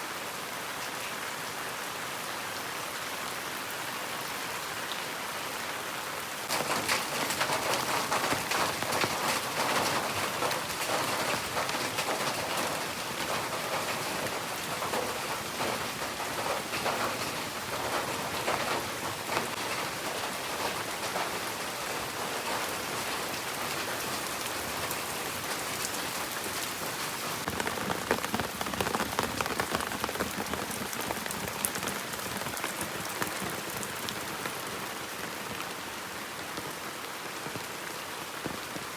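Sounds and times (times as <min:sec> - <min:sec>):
rain drops striking surface: 0:00.0 - 0:38.9.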